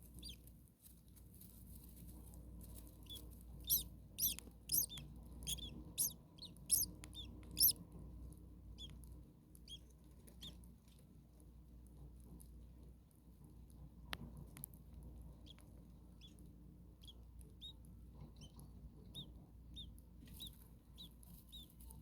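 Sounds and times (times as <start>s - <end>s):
starlings chirping: 3.0s - 7.8s.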